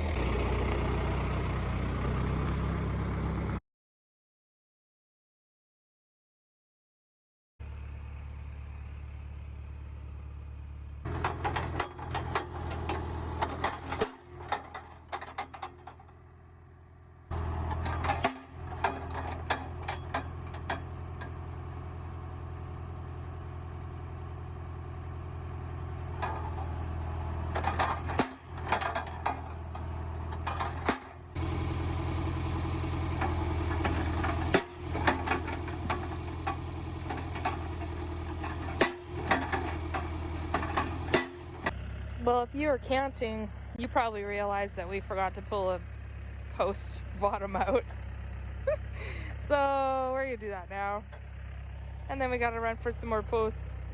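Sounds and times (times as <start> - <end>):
engine humming: 0.0 - 3.6, 7.6 - 53.9
clanks and knocks: 11.1 - 16.2, 17.3 - 21.4, 26.1 - 31.9, 32.9 - 41.8.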